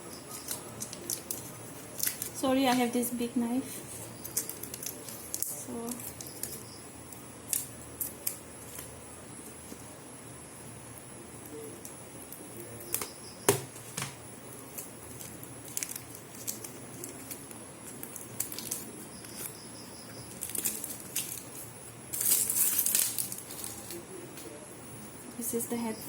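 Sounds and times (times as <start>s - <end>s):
cardboard crinkling: 14.7s - 19.6s, 20.2s - 24.0s.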